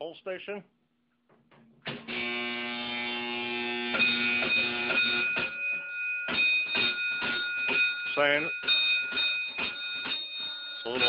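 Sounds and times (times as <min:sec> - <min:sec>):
steady electric buzz: 0:01.9 - 0:05.6
fire alarm bell striking code: 0:02.0 - 0:11.0.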